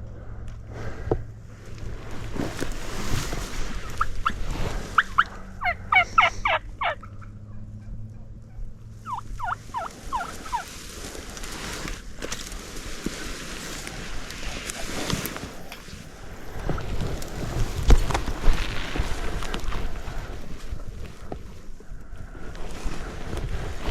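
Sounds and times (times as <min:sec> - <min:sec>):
turkey gobbling: 0:03.8 - 0:11.0.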